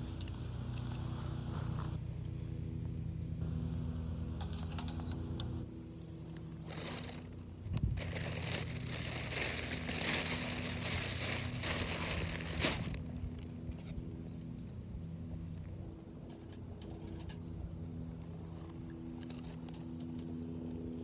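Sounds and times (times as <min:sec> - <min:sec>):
steady low hum: 0:00.0 - 0:16.2
crinkling and rustling: 0:06.4 - 0:13.5.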